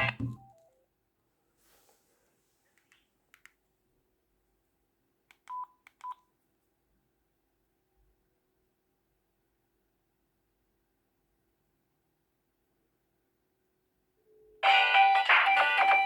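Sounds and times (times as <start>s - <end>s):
keypad beeps: 0.0s - 0.6s, 5.5s - 6.2s
phone ringtone: 0.0s - 0.6s, 14.6s - 16.0s.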